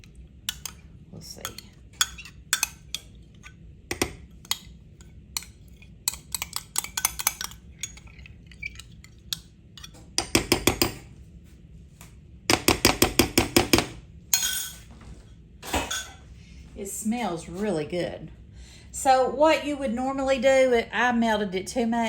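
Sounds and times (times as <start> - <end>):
spoon clinking on glass dish: 14.4 - 14.9.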